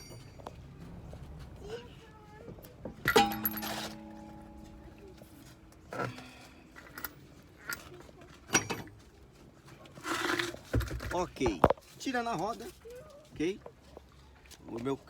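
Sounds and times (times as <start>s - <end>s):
metallic ring: 0.0s - 0.6s, 3.0s - 7.3s
metal tools clinking and knocking: 0.0s - 0.7s, 3.0s - 9.1s.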